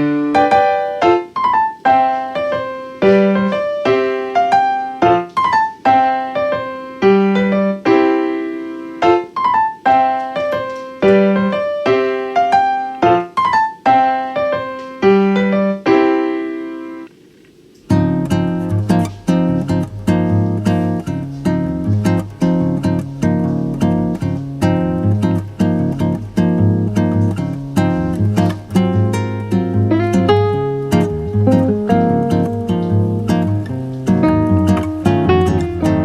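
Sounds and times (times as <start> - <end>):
gentle piano music: 0.0 - 17.1, 17.8 - 36.0.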